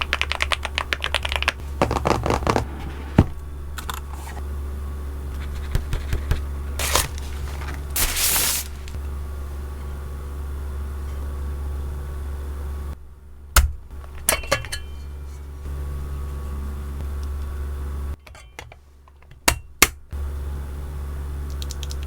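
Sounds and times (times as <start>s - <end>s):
keyboard typing: 0.0s - 2.4s
low hum: 0.0s - 18.2s
scraping rustling handling noises: 1.6s - 4.6s, 5.2s - 10.0s.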